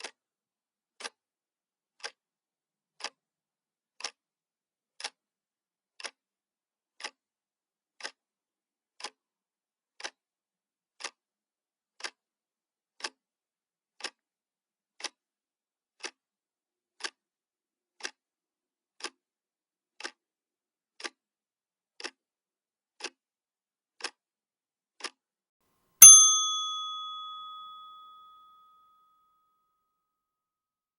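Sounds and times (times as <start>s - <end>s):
bell-like ding: 26.0s - 28.4s.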